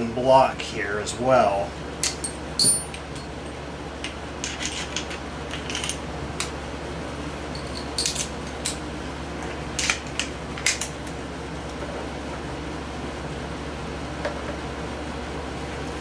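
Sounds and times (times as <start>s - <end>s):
steady low hum: 0.0s - 16.0s
metallic clinks of hand tools: 2.2s - 3.3s.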